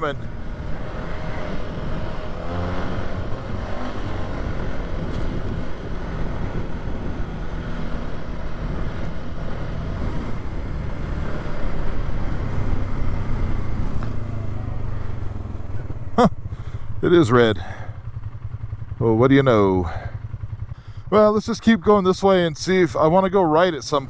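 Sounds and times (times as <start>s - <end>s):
atv engine running: 0.0s - 24.0s.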